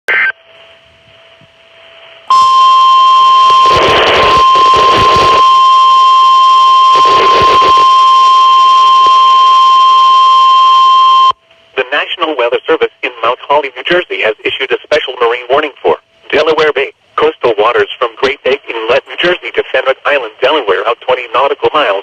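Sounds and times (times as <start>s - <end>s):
noisy static bursts: 0.1s - 22.0s
steady loud high tone: 2.3s - 11.4s.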